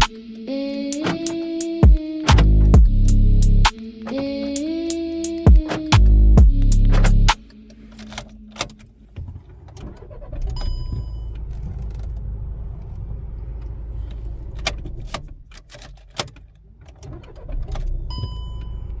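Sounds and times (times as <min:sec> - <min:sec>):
car engine running: 0:00.9 - 0:07.9.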